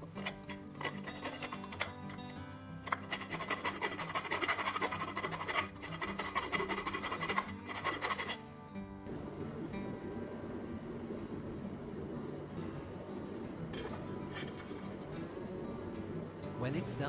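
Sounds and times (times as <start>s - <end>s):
tool scraping metal: 0.0s - 8.4s, 13.8s - 15.0s
background music: 0.0s - 17.0s.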